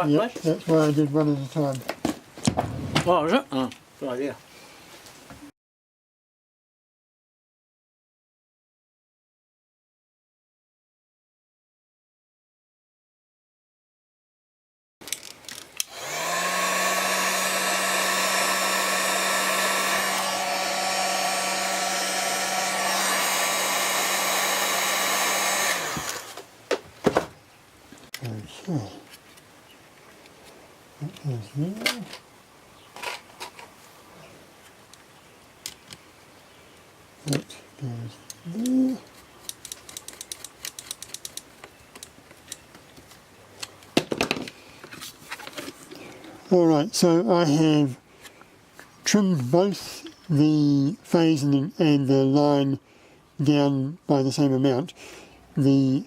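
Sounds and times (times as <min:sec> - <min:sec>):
heat gun motor humming: 0:15.8 - 0:26.5.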